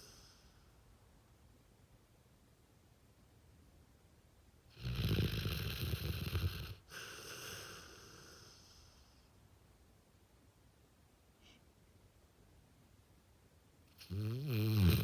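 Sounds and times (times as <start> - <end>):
dog snoring: 4.7 - 9.0, 13.9 - 15.0.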